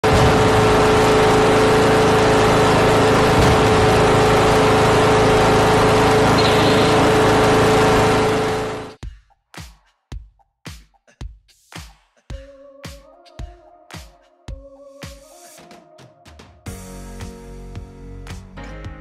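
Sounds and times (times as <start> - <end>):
lawn tractor engine running: 0.0 - 9.0
steady hum: 0.0 - 9.0.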